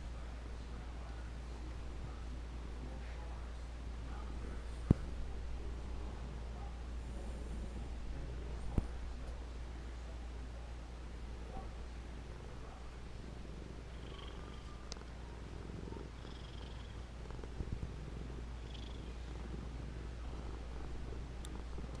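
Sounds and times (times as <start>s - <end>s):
cat purring: 11.5s - 22.0s.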